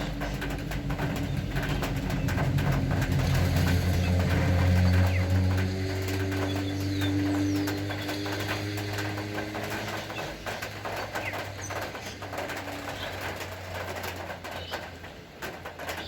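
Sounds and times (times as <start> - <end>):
low hum: 0.0 - 6.8
doves calling: 0.0 - 15.2
rain falling: 0.0 - 16.0.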